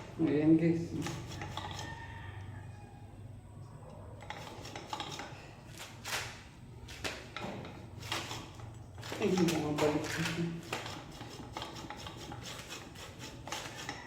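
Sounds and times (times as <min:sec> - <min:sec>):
faint metallic rubbing: 0:00.9 - 0:02.9.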